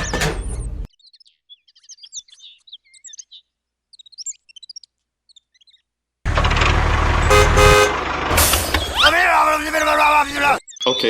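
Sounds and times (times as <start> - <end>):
small birds chirping: 0.0 - 6.1, 8.7 - 11.0
horn-like tones: 7.2 - 8.1.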